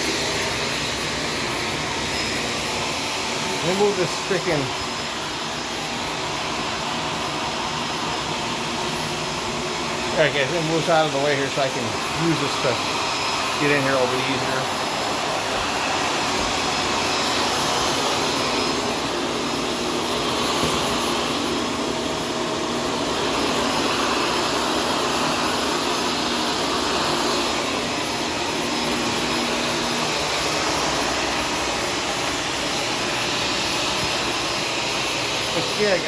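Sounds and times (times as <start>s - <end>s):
upright vacuum cleaner running: 0.0s - 36.0s.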